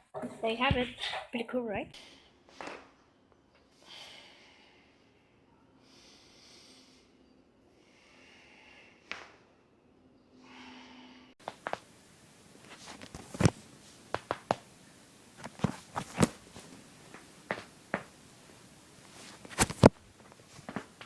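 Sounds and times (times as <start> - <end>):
soft breathy hiss: 3.7 - 9.3, 10.3 - 11.4.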